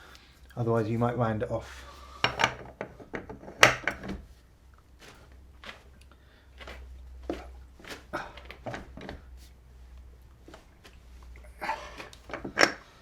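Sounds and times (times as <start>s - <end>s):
metal clicks and knocks of tools: 2.2s - 4.2s, 12.0s - 12.8s.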